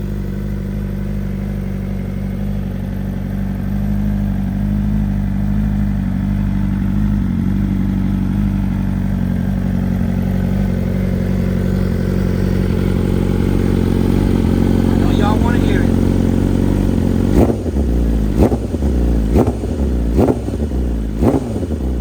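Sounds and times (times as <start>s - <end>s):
motorcycle engine idling: 0.0s - 22.0s.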